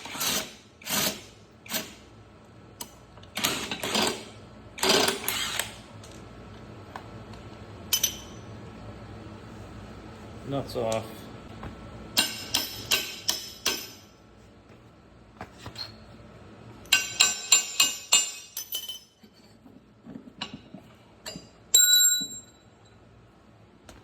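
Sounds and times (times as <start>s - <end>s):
metal clinks and taps: 21.2s - 23.0s.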